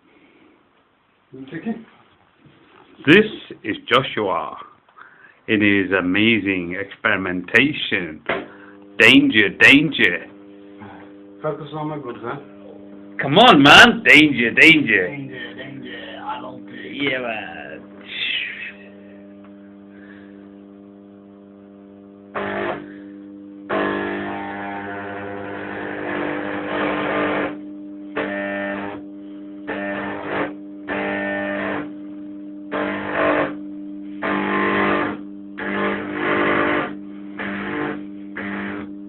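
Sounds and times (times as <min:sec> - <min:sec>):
electric arcs buzzing: 0:02.4 - 0:39.0
transformer humming: 0:08.2 - 0:25.4.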